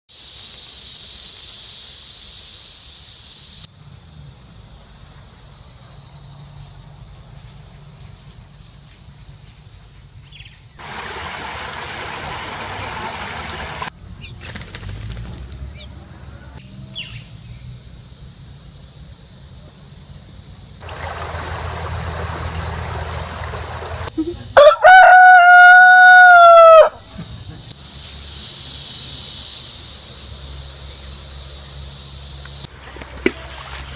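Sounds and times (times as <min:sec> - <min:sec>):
buzzing insect chorus: 0:00.1 - 0:33.9
rooster crowing: 0:20.9 - 0:27.0.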